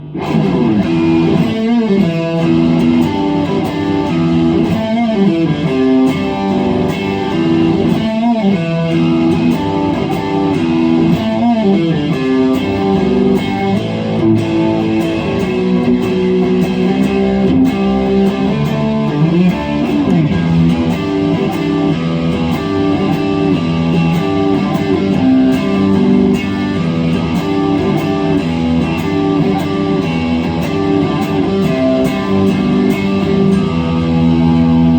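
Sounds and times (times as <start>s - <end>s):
electric guitar string bends: 0.0s - 34.9s.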